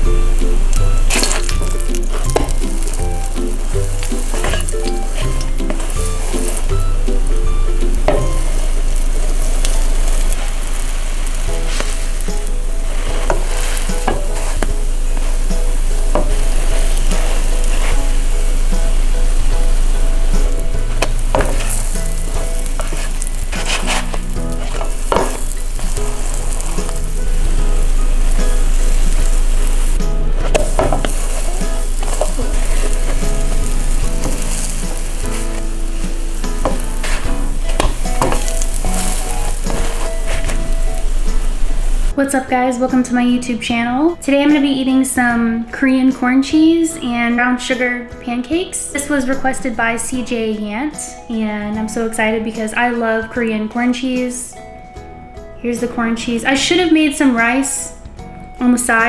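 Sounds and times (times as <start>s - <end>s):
food sizzling in a frying pan: 0.0s - 42.2s
utensil tapping and scraping pan: 0.4s - 41.8s.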